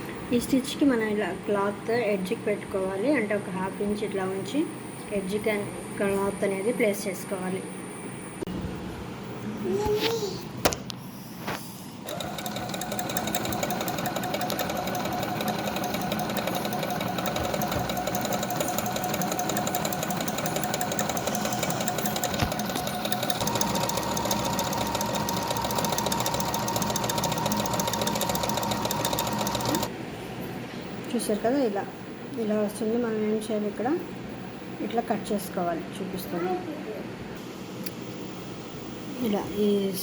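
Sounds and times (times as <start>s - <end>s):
sewing machine running: 12.0s - 29.9s.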